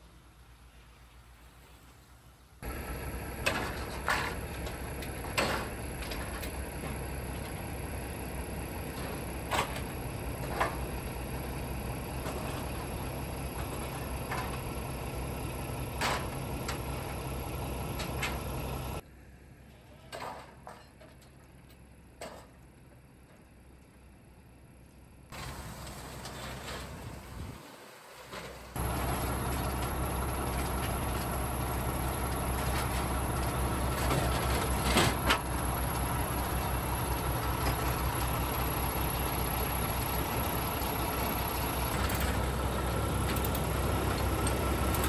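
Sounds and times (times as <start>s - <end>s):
machinery hum: 2.4s - 45.0s
clanks and knocks: 3.4s - 7.6s, 8.8s - 10.9s.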